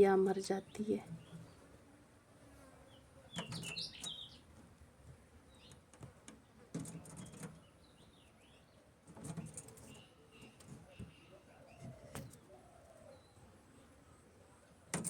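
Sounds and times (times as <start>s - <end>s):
bird chirping faintly: 2.8s - 4.6s, 5.4s - 13.5s.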